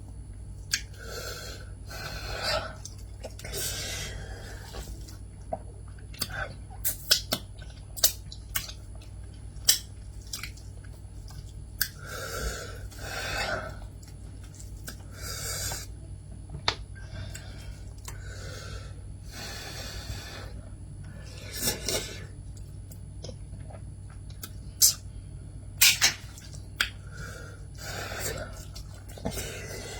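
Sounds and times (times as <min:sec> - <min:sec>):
person chewing wetly: 0:02.4 - 0:03.7, 0:04.3 - 0:15.9, 0:25.8 - 0:29.9.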